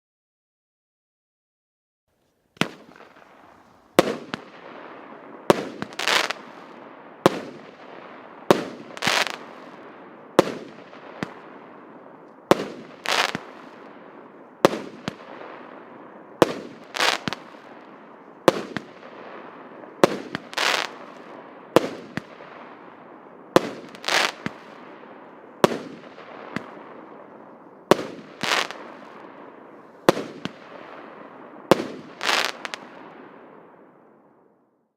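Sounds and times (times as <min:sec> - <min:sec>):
firework bursts: 0:02.6 - 0:33.3
firework hiss: 0:05.6 - 0:06.6, 0:08.9 - 0:09.7, 0:12.7 - 0:13.7, 0:16.7 - 0:17.5, 0:20.2 - 0:21.0.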